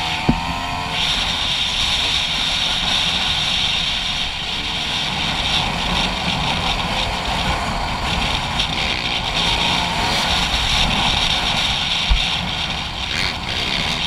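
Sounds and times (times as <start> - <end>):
dirt bike engine running: 0.0 - 14.0.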